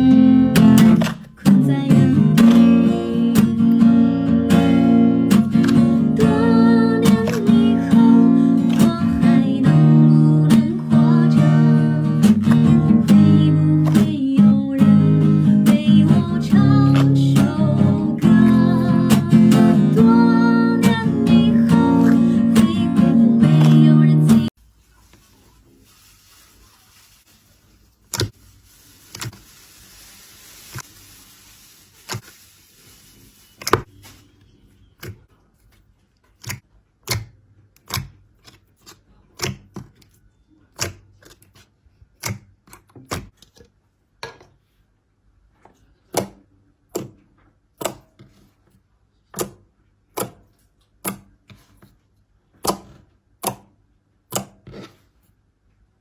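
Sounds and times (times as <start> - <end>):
faint hiss: 24.6 - 33.8.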